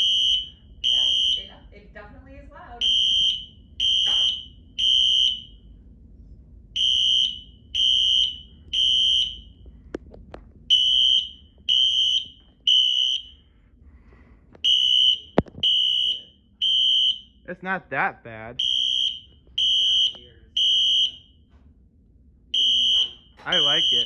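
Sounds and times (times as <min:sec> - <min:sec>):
fire alarm horn beeps: 0:00.0 - 0:01.8, 0:02.8 - 0:05.8, 0:06.8 - 0:09.8, 0:10.7 - 0:13.6, 0:14.6 - 0:17.5, 0:18.6 - 0:21.5, 0:22.5 - 0:24.0.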